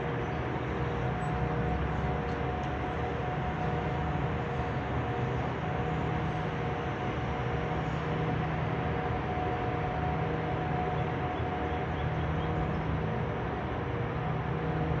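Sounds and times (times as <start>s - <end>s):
machinery drone: 0.0s - 15.0s.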